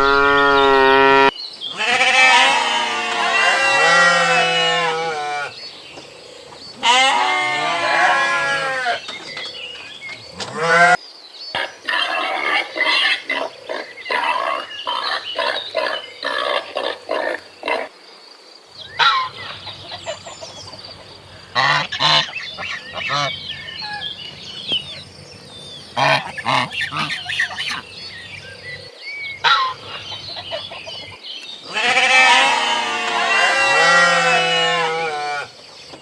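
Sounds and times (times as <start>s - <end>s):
farm animal calls: 0.0s - 5.6s, 6.4s - 11.0s, 18.8s - 35.6s.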